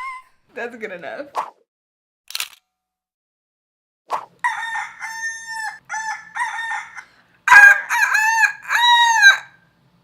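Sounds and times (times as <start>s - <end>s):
person imitating rooster crows: 4.4s - 9.6s.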